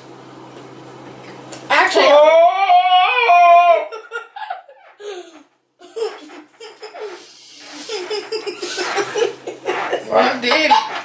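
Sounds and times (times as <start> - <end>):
drawn-out vocal cry: 2.0 - 4.0
people laughing: 3.3 - 4.9, 5.8 - 11.0.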